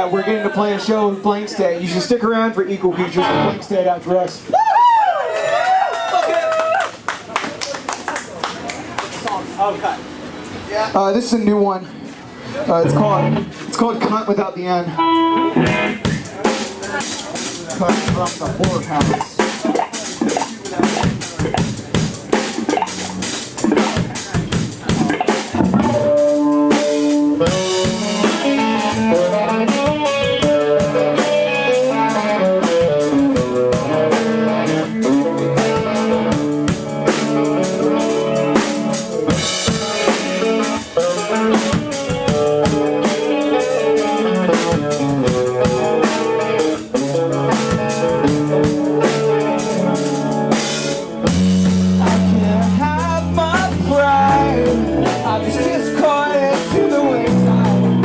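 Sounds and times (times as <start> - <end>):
rock band playing live: 12.8 - 14.2, 15.0 - 58.0
drum kit beat: 15.1 - 58.0.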